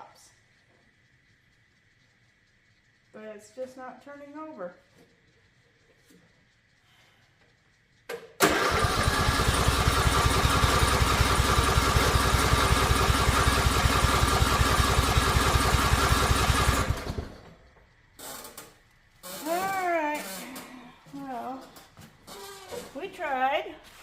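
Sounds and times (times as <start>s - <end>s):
lawn mower engine cranking: 8.3s - 20.7s.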